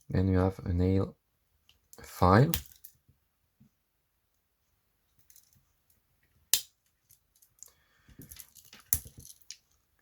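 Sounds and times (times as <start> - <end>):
light clicks and handling noise: 5.0 - 10.0.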